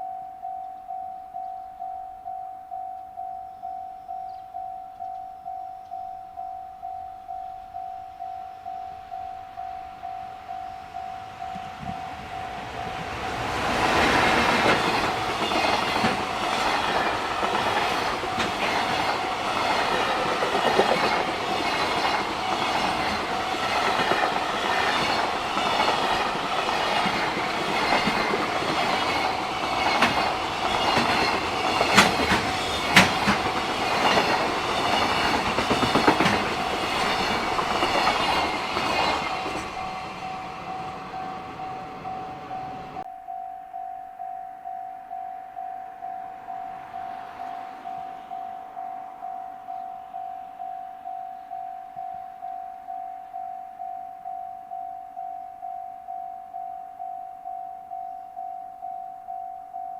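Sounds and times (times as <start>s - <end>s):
level crossing bell ringing: 0.0s - 13.2s, 39.6s - 59.9s
train wheels clattering: 11.5s - 43.0s.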